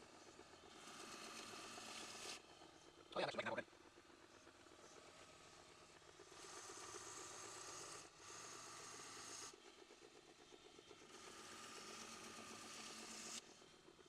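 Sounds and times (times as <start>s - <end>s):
belt grinder motor humming: 11.0s - 13.5s.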